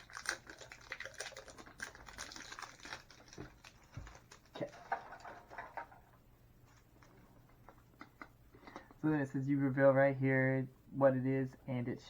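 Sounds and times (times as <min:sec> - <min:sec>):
toy packaging clicking and crinkling: 0:00.0 - 0:06.0.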